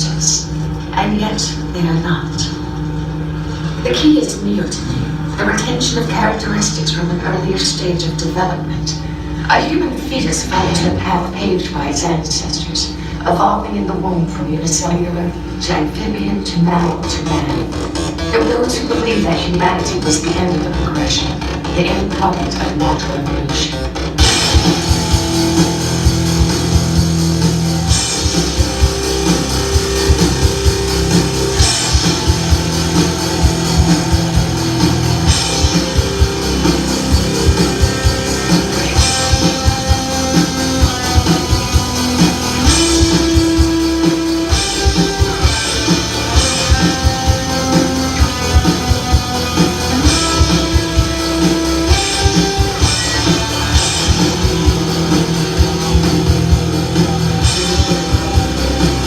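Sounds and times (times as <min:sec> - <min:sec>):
rock band playing: 0:10.4 - 0:11.7, 0:17.3 - 0:59.0.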